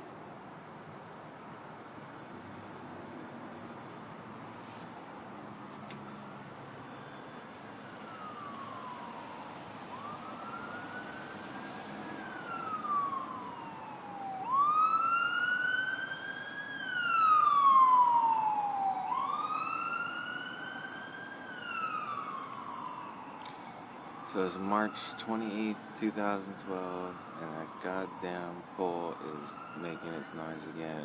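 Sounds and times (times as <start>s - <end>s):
high siren-like screech: 6.6s - 31.0s.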